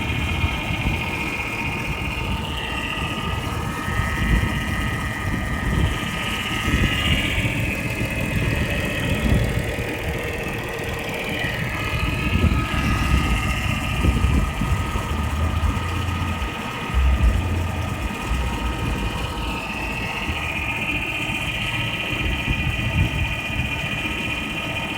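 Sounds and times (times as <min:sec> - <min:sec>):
car engine idling: 0:00.0 - 0:24.9
steady whine: 0:00.0 - 0:24.9
uneven low knocking: 0:13.1 - 0:20.4.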